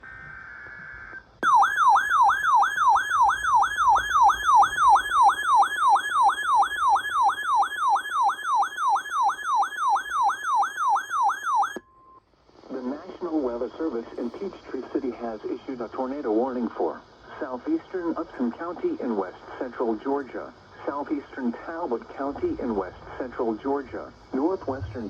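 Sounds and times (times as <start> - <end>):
faint steady tone: 0.2 - 25.0
downward sweeping alert siren: 1.4 - 11.8.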